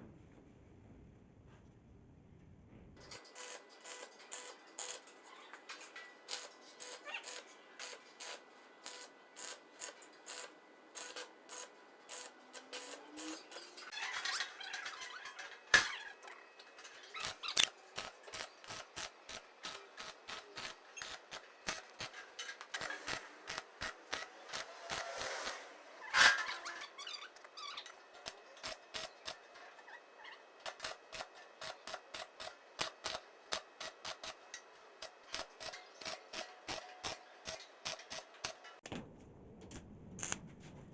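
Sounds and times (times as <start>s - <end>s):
scraping and rubbing: 20.6s - 28.0s.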